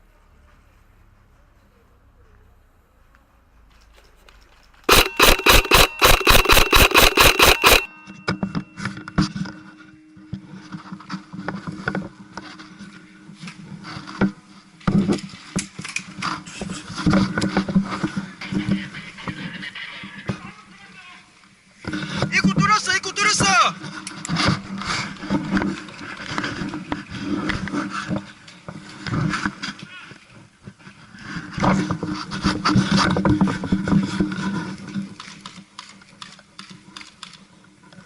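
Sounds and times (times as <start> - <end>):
rapid airsoft gun shots: 4.9 - 8.0.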